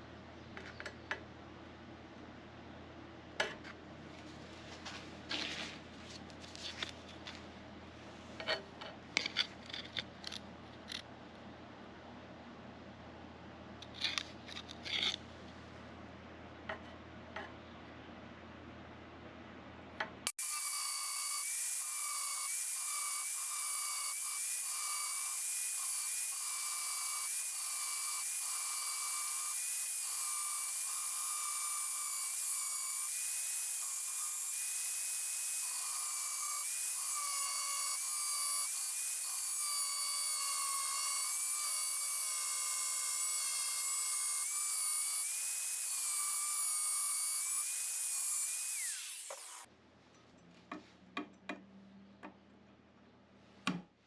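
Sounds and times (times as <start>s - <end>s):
angle grinder cutting steel: 20.3s - 49.7s.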